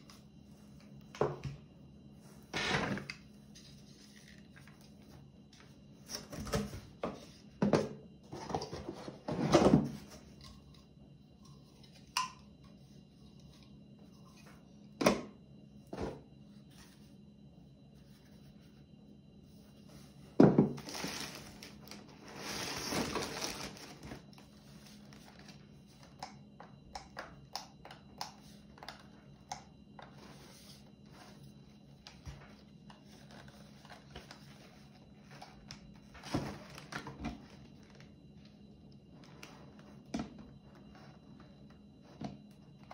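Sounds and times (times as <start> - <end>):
packaging crinkling and rustling: 20.8 - 24.3.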